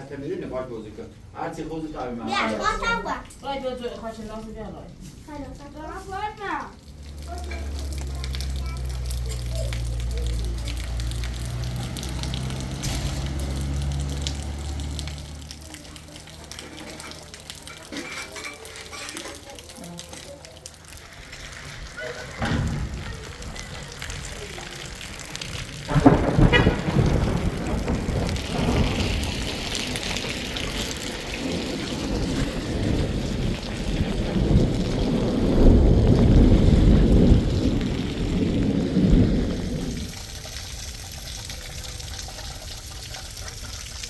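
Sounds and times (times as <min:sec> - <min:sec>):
rain falling: 0:00.0 - 0:44.0
food sizzling in a pan: 0:05.0 - 0:26.0
low rumble: 0:21.7 - 0:40.2.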